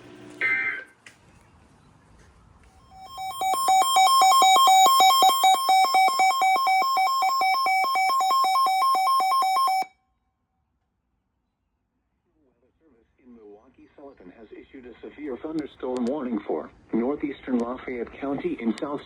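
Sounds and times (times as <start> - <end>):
two-pitch electronic alarm beeping: 2.9 - 9.9.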